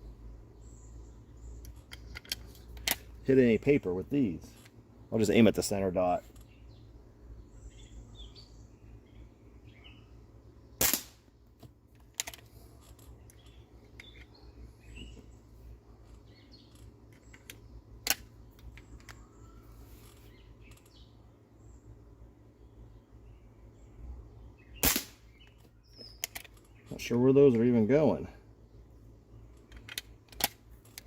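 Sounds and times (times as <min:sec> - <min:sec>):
faint bird chirps: 0:06.2 - 0:10.8, 0:12.6 - 0:29.7
airsoft pistol shots: 0:10.8 - 0:11.3, 0:24.8 - 0:25.4.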